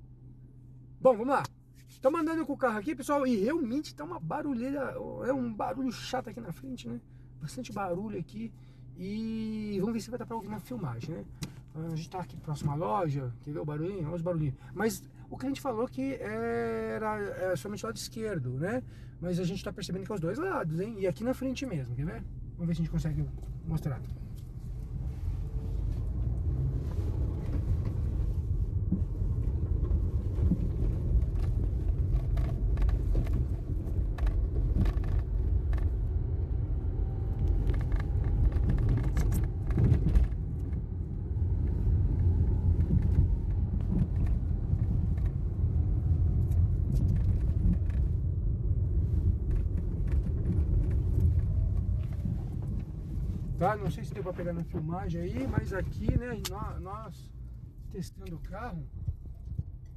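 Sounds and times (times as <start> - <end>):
road and tyre rumble: 0.0 - 59.9
suspension knocks and rattles: 25.8 - 57.0.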